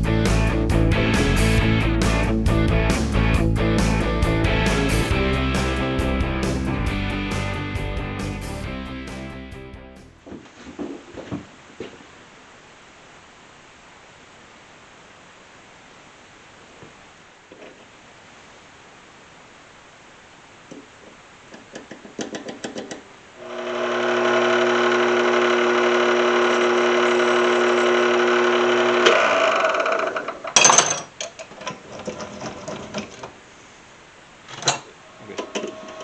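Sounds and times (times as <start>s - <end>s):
lathe motor whining: 23.4s - 30.0s.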